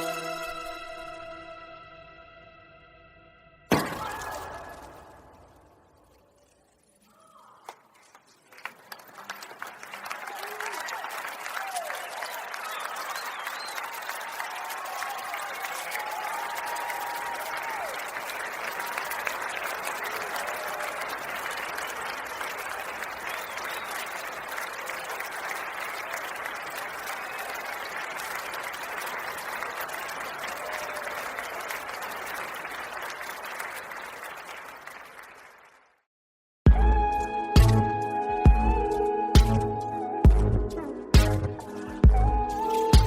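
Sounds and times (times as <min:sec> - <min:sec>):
large audience applauding: 0:07.1 - 0:36.1, 0:41.2 - 0:43.0
whistles from audience: 0:10.0 - 0:28.6, 0:36.8 - 0:43.0.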